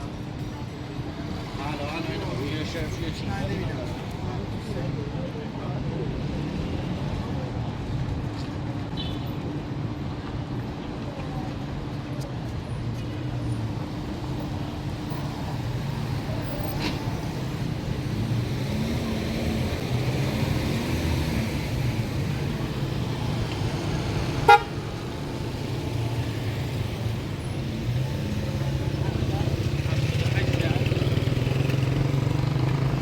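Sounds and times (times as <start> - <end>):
street traffic engines: 0.0 - 33.0
vehicle horn toot: 24.4 - 24.8.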